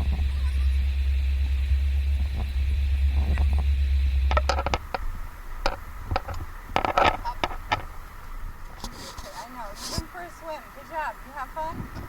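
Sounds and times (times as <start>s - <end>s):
car driving rumble inside cabin: 0.0s - 8.8s
light clicks and knocks: 3.2s - 10.2s.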